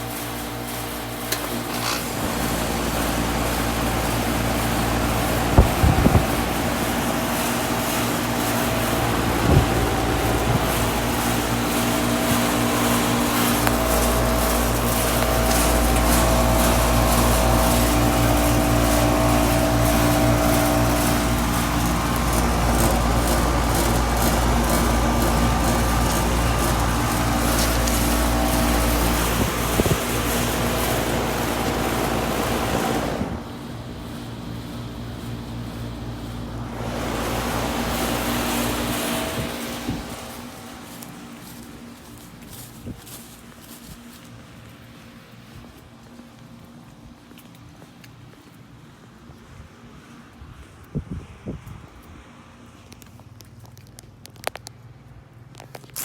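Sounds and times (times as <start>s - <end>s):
air conditioner unit humming: 0.0s - 52.8s
deeper hum: 0.9s - 42.9s.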